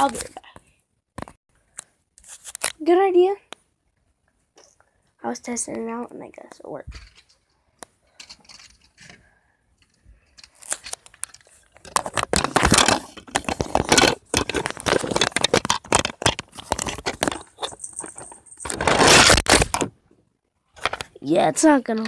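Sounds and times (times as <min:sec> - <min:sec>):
plastic bricks clattering: 0:06.9 - 0:07.4, 0:08.1 - 0:19.9.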